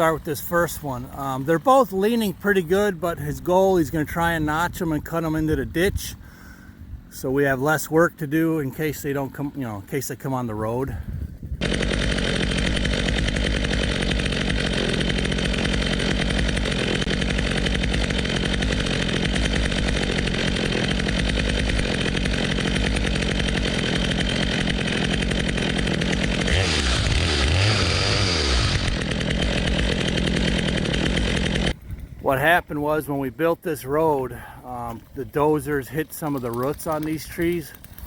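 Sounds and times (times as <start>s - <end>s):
chainsaw cutting wood: 11.6s - 31.8s, 34.9s - 38.0s.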